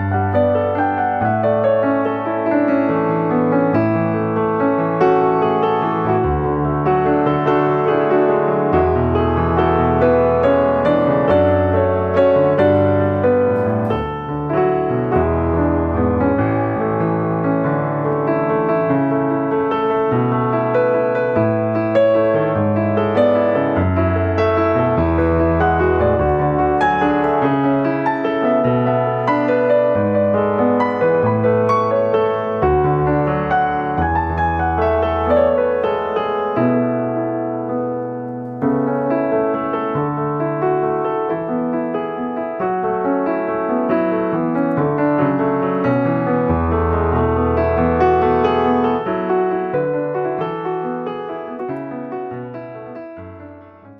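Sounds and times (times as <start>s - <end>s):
gentle piano music: 0.0s - 53.9s.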